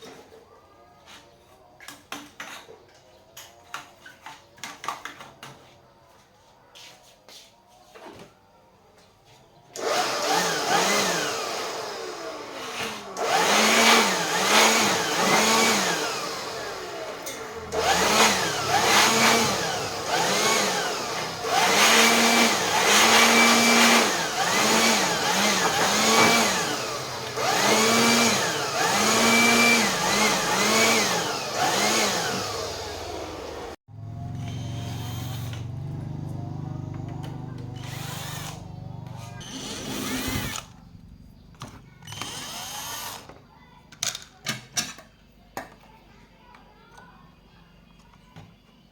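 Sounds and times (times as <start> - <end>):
power drill motor revving: 9.8 - 36.0, 36.8 - 40.8, 42.0 - 43.4.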